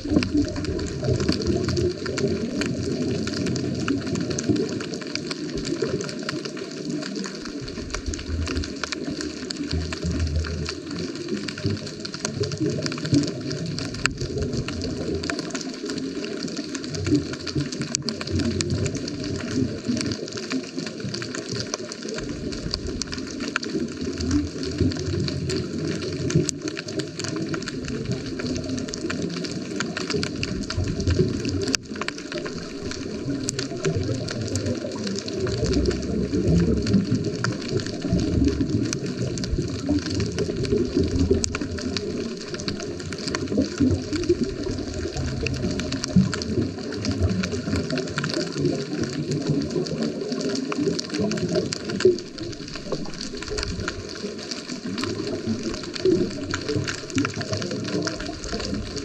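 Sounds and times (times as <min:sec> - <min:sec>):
faint clicks and crackles: 0:00.0 - 0:59.0
underwater churning rumble: 0:00.0 - 0:59.0.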